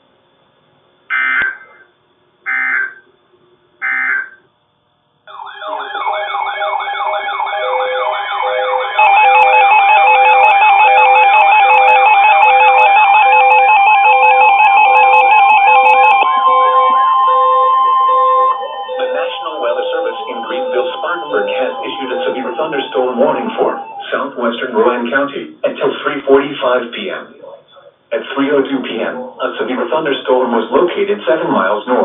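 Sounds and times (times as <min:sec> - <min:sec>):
warbling electronic alert tone: 0:05.3 - 0:24.4
electronic beeps: 0:08.6 - 0:24.2.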